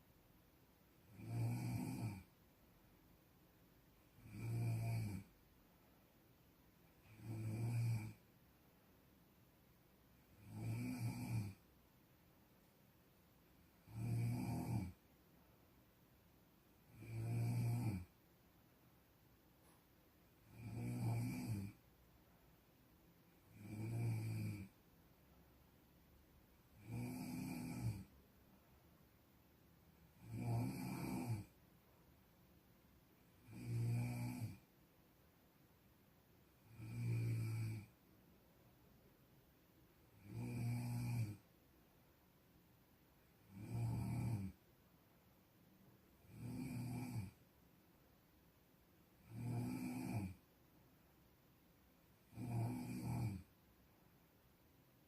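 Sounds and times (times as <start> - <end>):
person snoring: 1.1 - 2.3, 4.1 - 5.4, 7.0 - 8.2, 10.3 - 11.6, 13.8 - 15.0, 16.8 - 18.1, 20.4 - 21.8, 23.5 - 24.8, 26.7 - 28.2, 30.1 - 31.6, 33.4 - 34.7, 36.6 - 38.0, 40.2 - 41.4, 43.4 - 44.6, 46.2 - 47.4, 49.2 - 50.4, 52.2 - 53.5.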